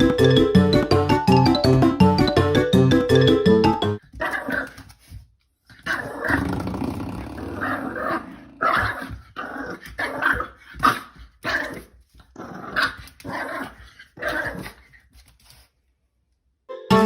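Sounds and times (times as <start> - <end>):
dog growling and barking: 4.1 - 4.8, 5.7 - 14.9.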